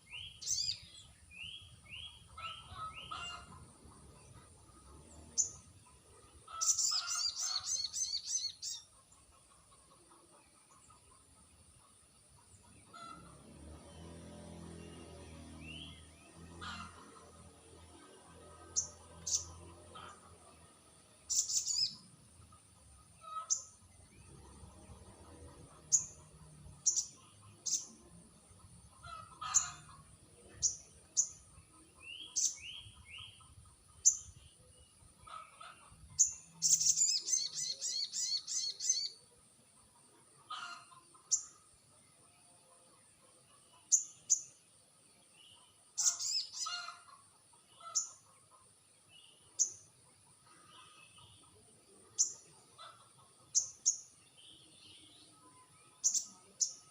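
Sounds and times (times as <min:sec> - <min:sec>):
bird chirping: 0:00.0 - 0:56.9
bird trill: 0:06.5 - 0:08.9, 0:35.2 - 0:39.2, 0:45.6 - 0:47.2.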